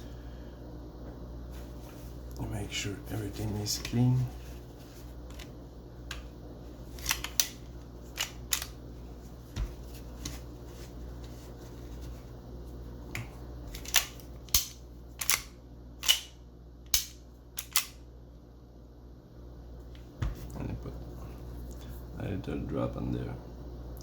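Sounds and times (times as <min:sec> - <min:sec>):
pistol mechanism clicks and clacks: 0:13.8 - 0:16.3, 0:16.9 - 0:18.0.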